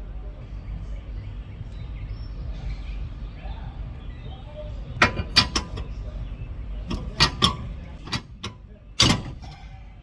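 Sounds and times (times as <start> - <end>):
tools knocking and clanking: 5.0 - 5.9, 6.9 - 9.6.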